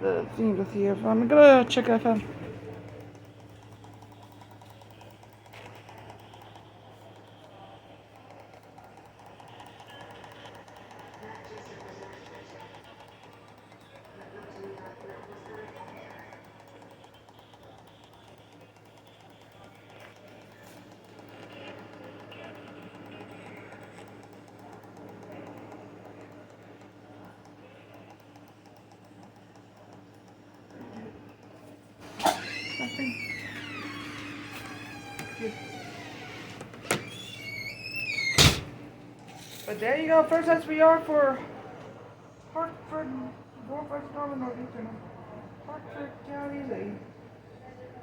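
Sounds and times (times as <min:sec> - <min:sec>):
low electrical hum: 0:00.0 - 0:08.5, 0:28.9 - 0:48.0.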